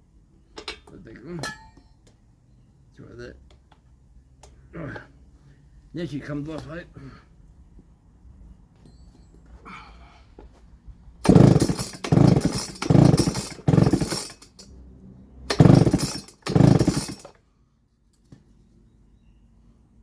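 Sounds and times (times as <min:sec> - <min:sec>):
chainsaw recoil starter pulls: 0:11.2 - 0:14.7, 0:15.5 - 0:17.4
chainsaw engine turning over: 0:11.2 - 0:14.8, 0:15.5 - 0:17.4.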